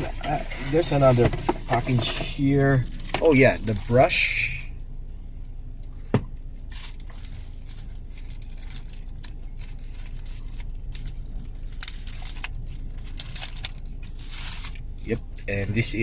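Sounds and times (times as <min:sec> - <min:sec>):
plastic packaging crinkling and tearing: 0:06.5 - 0:15.3.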